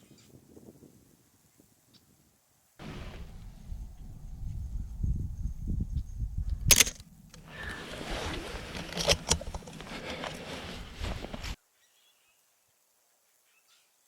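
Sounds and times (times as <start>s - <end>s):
low rumble: 2.8s - 6.7s
rustling handling noise: 6.7s - 11.6s.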